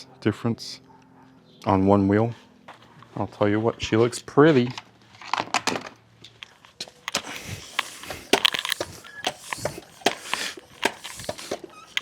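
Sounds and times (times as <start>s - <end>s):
clicks and knocks: 5.2s - 12.0s.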